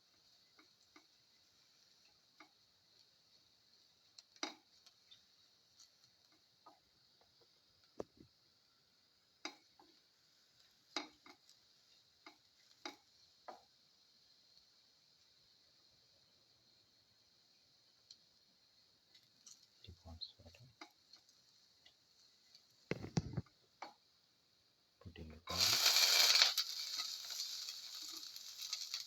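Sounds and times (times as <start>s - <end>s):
faint steady sizzling hiss: 0.0s - 29.0s
utensil clicking against pan: 4.2s - 6.8s, 10.9s - 11.6s, 26.5s - 29.0s.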